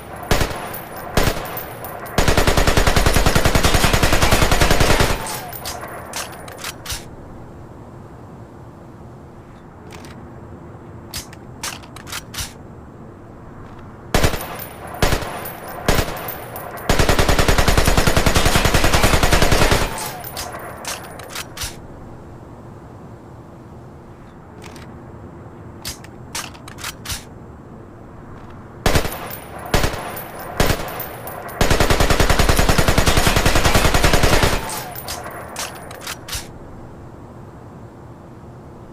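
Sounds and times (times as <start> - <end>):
rifle gunshots: 0.0 - 6.4, 14.2 - 21.3, 28.9 - 36.3.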